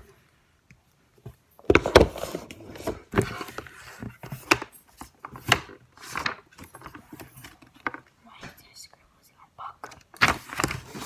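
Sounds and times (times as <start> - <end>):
objects knocking on hard surface: 1.6 - 3.3.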